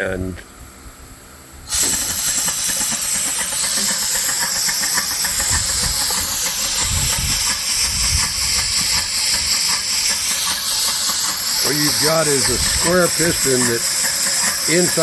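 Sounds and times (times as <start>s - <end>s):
steam engine exhaust hiss and chuffing: 0.6s - 15.0s.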